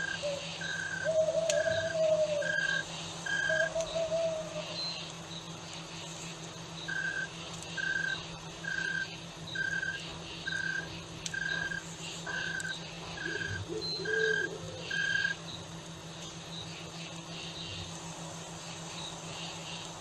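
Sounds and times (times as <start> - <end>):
high piping call: 0.0 - 4.7
low held animal call: 0.0 - 4.8, 6.9 - 15.4
insects chirping: 0.0 - 20.0.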